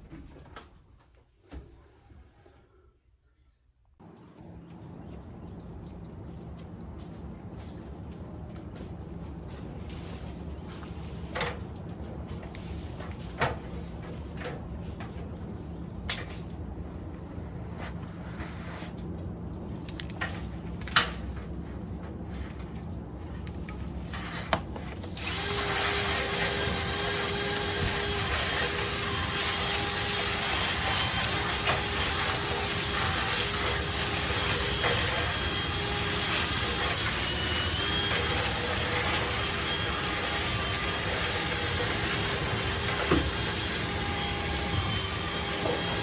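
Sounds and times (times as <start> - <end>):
motorised cleaning tool running: 25.2 - 46.0.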